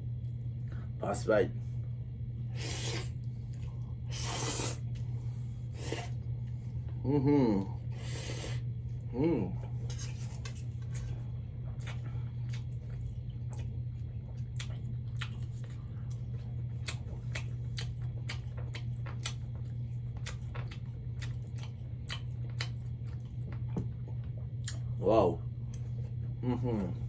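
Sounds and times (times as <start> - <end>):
steady low hum: 0.0 - 27.0
wet chewing mouth sounds: 9.6 - 25.0.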